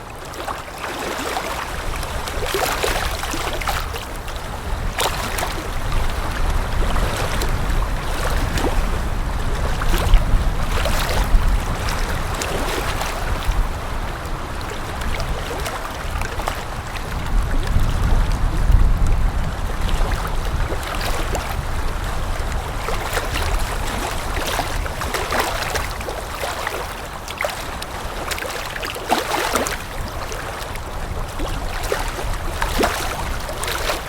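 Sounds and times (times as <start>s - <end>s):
water lapping and splashing: 0.0s - 34.0s
wind rumbling: 1.8s - 26.2s.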